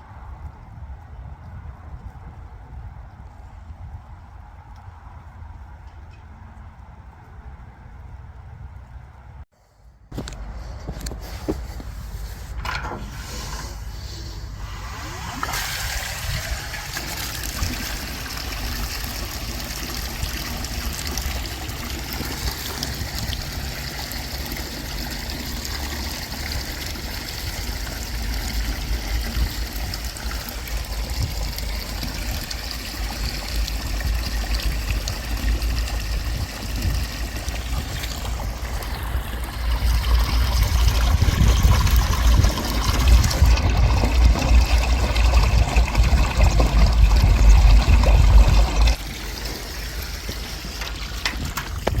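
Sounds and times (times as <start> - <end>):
water running in a stream: 10.2 - 52.0
low rumble: 27.9 - 52.0.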